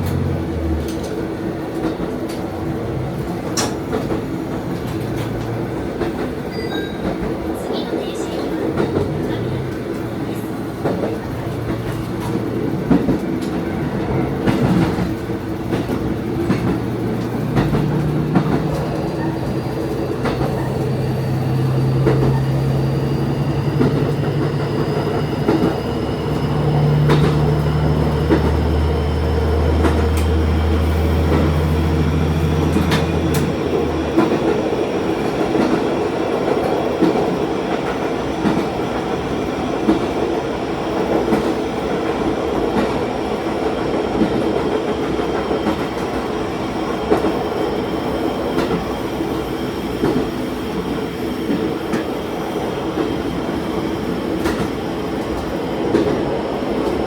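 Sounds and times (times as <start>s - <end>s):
train running on rails: 0.0s - 57.0s
low engine drone: 13.8s - 34.4s.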